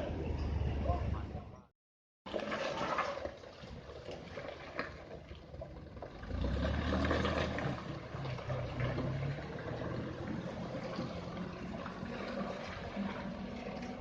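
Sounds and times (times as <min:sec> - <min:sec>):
heavy vehicle engine drone: 0:00.0 - 0:01.7, 0:05.3 - 0:14.0.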